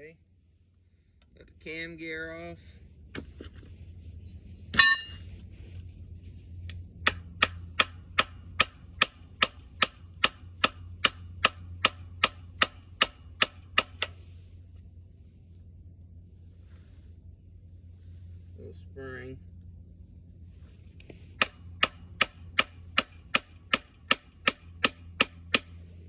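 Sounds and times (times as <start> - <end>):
loud metallic clang: 4.8 - 5.2.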